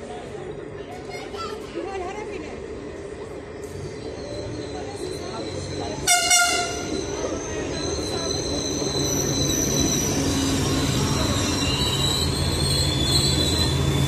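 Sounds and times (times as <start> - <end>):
train rumbling: 0.0 - 14.0
train wheels squealing on rails: 3.2 - 14.0.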